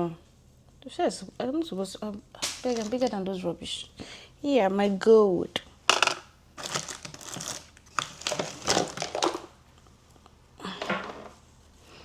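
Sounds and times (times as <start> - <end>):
bag crinkling and rustling: 2.6 - 3.1, 6.6 - 9.6.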